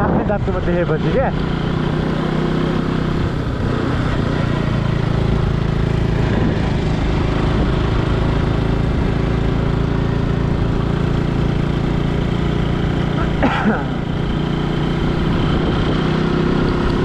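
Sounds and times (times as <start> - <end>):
motorcycle engine running: 0.0 - 17.0.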